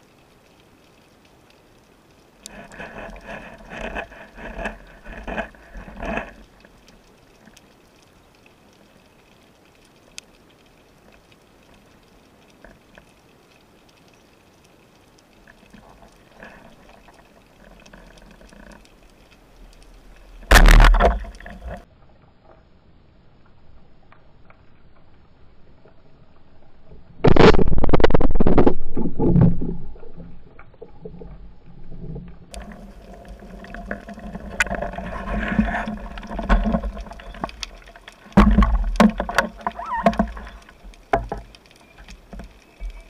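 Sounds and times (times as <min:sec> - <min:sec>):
underwater knocking and rustling: 0:00.0 - 0:22.7, 0:23.4 - 0:43.0
loud sudden underwater noise: 0:20.4 - 0:21.4, 0:27.2 - 0:30.4.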